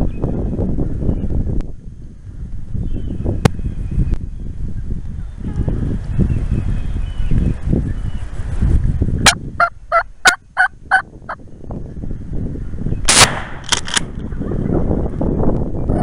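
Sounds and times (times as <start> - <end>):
wind rumble: 0.0 - 16.0
turkey gobble: 9.6 - 11.0.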